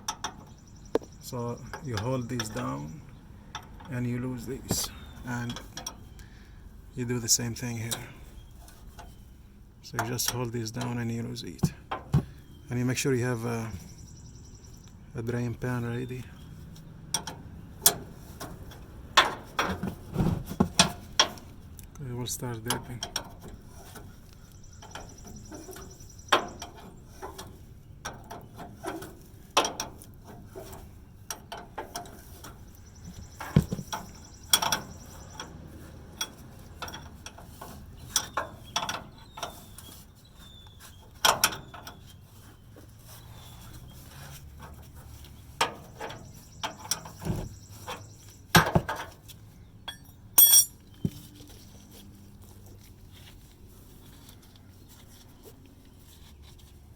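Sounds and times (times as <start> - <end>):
wrenches clinking on metal fittings: 49.8 - 51.1.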